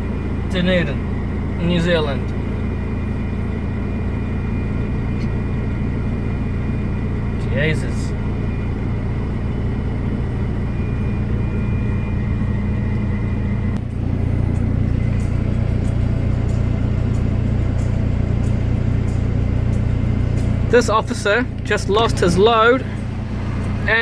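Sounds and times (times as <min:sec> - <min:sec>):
motor vehicle engine rumble: 0:00.0 - 0:24.0.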